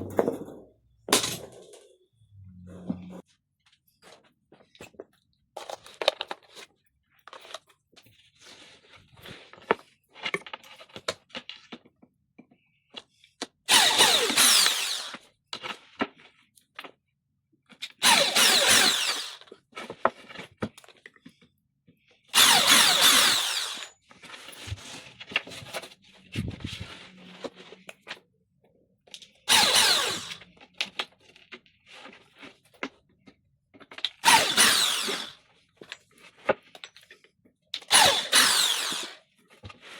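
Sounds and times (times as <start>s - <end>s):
power drill running: 13.7s - 15.2s, 18.0s - 19.5s, 22.4s - 24.0s, 29.5s - 30.4s, 34.2s - 35.4s, 37.8s - 39.2s.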